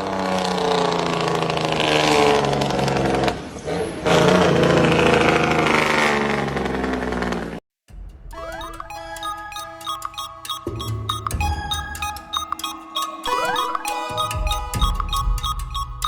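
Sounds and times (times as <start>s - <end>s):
music: 7.9s - 16.0s.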